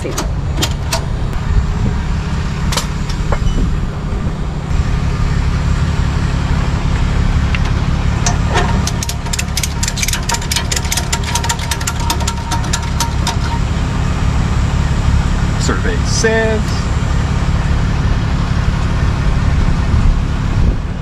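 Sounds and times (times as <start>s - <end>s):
sharp clicks and rattles: 0.0s - 1.4s, 2.7s - 3.6s, 7.4s - 14.0s
truck engine idling: 0.0s - 20.6s.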